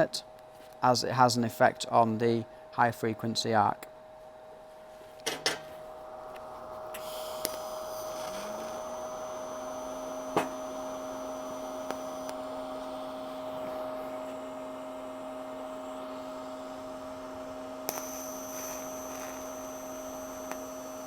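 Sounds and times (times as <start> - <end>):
welder humming: 5.2 - 21.0
low tone: 6.0 - 21.0.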